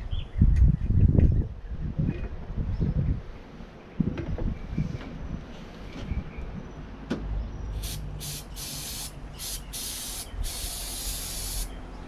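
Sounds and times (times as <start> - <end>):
pressurised spray hissing: 7.8 - 11.8.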